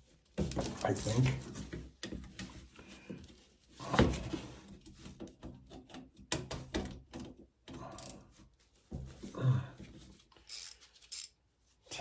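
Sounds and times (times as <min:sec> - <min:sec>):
metal tools clinking and knocking: 0:10.4 - 0:11.4.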